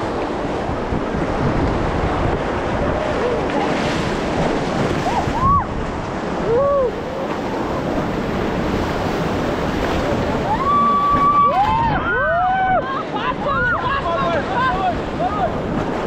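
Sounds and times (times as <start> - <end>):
river water rushing: 0.0 - 16.0
wind buffeting microphone: 0.0 - 16.0
people shouting: 10.5 - 15.5.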